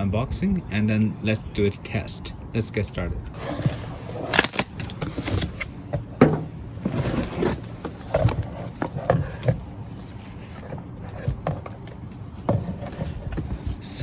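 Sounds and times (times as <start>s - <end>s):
cardboard box being handled: 6.3s - 13.8s.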